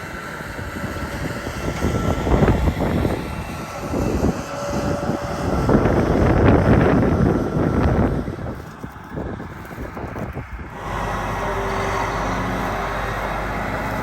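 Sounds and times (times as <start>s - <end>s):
machinery engines running: 0.0s - 14.0s
wind buffeting microphone: 0.0s - 14.0s.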